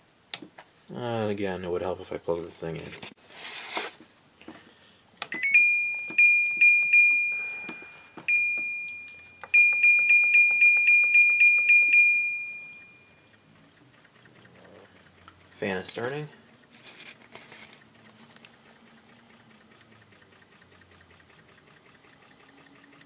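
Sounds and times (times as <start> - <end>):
air conditioner panel beeps: 5.2 - 13.4.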